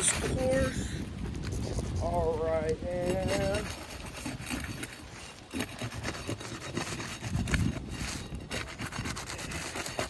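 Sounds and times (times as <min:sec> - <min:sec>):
roof shingles crackling and scraping: 0:00.0 - 0:10.0.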